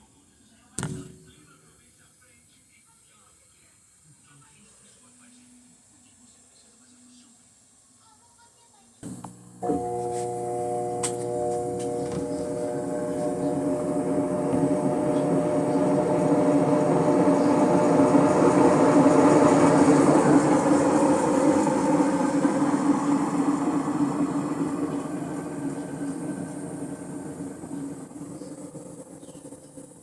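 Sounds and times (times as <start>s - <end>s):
washing machine spin cycle hum: 9.0s - 30.0s.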